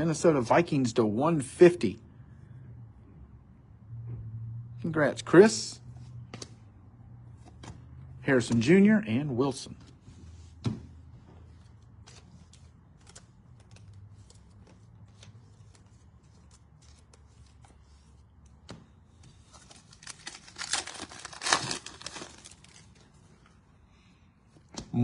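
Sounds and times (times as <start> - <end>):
wrapper crinkling and tearing: 19.5 - 23.2.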